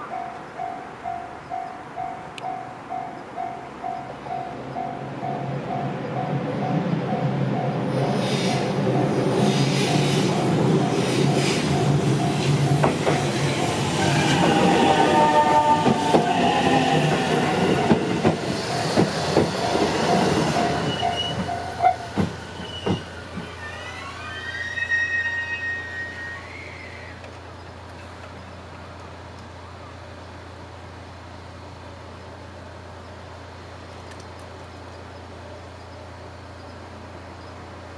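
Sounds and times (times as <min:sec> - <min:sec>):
train wheels rumbling and knocking: 0:02.3 - 0:24.8
gliding squeals: 0:09.4 - 0:27.2
high squealing tones: 0:22.6 - 0:27.2.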